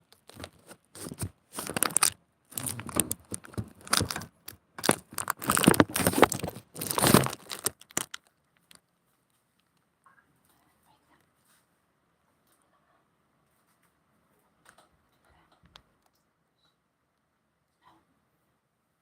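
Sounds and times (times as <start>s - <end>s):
rustling crinkling noise: 0.0s - 9.9s.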